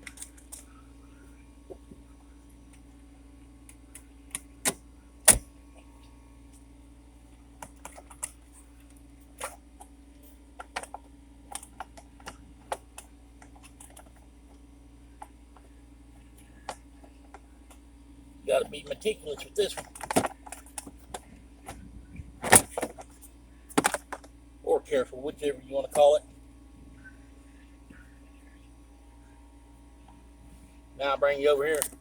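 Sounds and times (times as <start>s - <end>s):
steady low hum: 0.0s - 32.0s
clicks of prying car parts: 4.3s - 5.5s, 22.4s - 23.1s, 23.7s - 24.3s.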